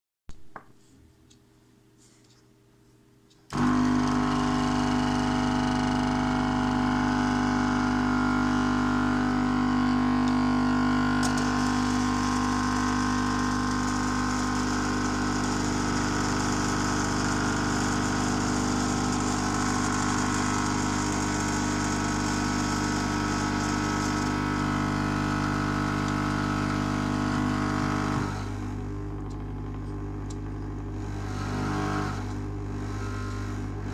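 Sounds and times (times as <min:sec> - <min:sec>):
air pump humming: 0:03.5 - 0:33.9.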